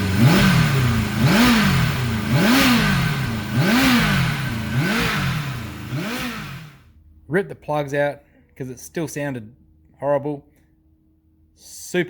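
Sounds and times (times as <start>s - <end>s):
motorcycle engine revving roughly: 0.0s - 6.9s.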